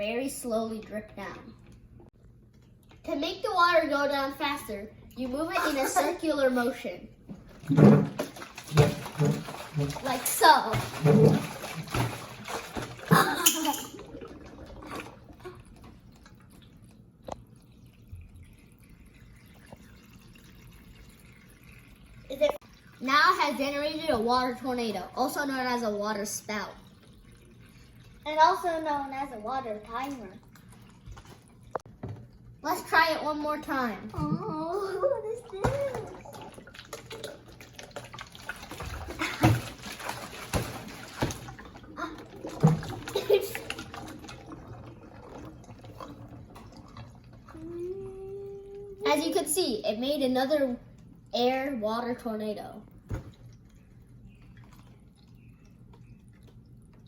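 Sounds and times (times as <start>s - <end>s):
water draining: 7.3s - 49.6s.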